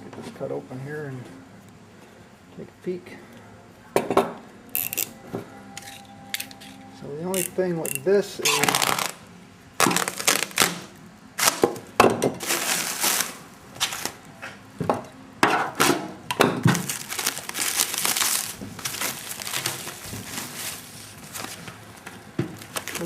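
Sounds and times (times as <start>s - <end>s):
sharp packaging cracks: 7.4s - 14.2s, 16.7s - 20.8s, 22.5s - 23.0s
plastic and cardboard crinkling: 8.5s - 11.7s, 12.4s - 14.3s, 16.6s - 23.0s.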